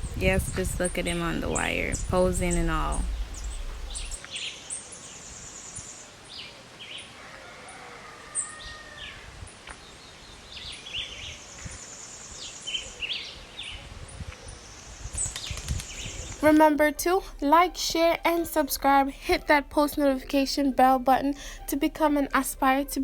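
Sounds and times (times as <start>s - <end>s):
small birds chirping: 0.0s - 7.1s, 8.4s - 16.6s.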